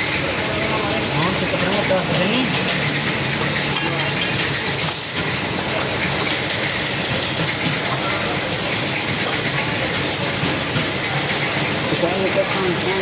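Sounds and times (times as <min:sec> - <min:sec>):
car engine running: 0:00.0 - 0:13.0
rapid pulsing exhaust noise: 0:00.0 - 0:13.0.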